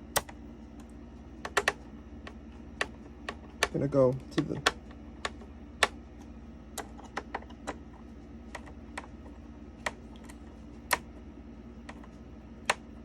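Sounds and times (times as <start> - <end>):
faint low hum: 0.0 - 13.0
sharp clicks and taps: 0.1 - 0.4, 1.4 - 6.0.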